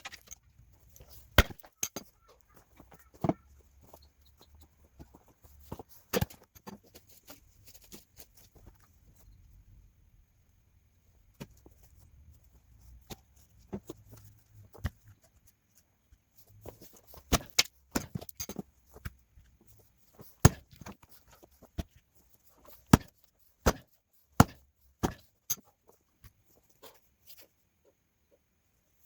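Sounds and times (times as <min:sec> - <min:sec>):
axe chopping firewood: 0:01.2 - 0:02.1, 0:06.1 - 0:06.8, 0:17.1 - 0:18.6, 0:20.3 - 0:21.1, 0:22.7 - 0:25.6.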